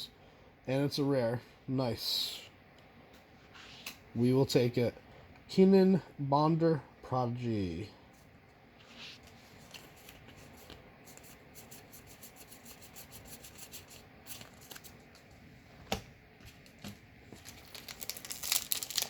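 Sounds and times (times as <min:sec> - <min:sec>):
trading cards sliding and ticking: 0:08.8 - 0:15.2
foil wrapper crinkling: 0:16.6 - 0:19.0.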